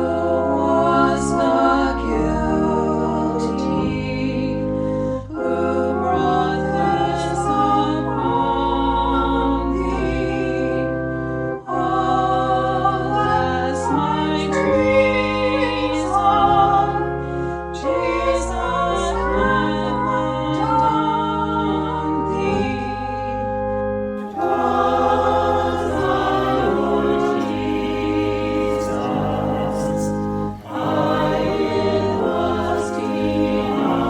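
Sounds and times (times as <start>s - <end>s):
choir singing: 0.0s - 4.5s, 5.3s - 10.7s, 11.7s - 16.8s, 24.2s - 34.0s
organ chords: 0.0s - 34.0s.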